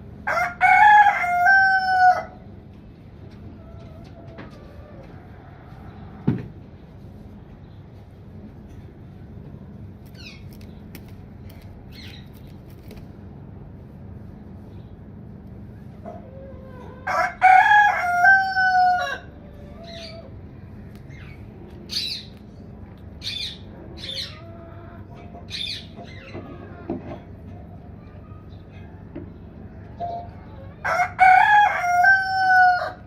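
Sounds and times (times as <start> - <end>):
steady low hum: 0.0 - 33.0
rooster crowing: 0.2 - 2.4, 16.4 - 20.1, 30.8 - 33.0.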